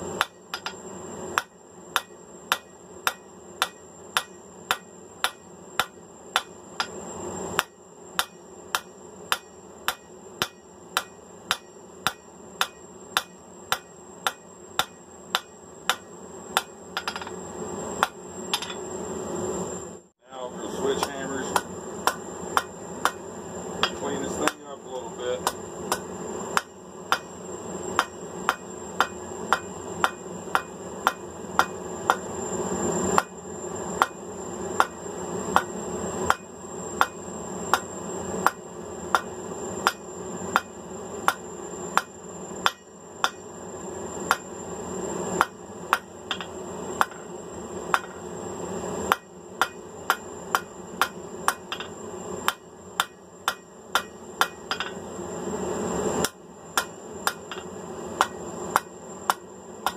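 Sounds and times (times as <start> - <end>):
steady hum: 0.0 - 59.9
hammer ringing on anvil: 0.2 - 0.8, 1.4 - 7.0, 7.6 - 16.0.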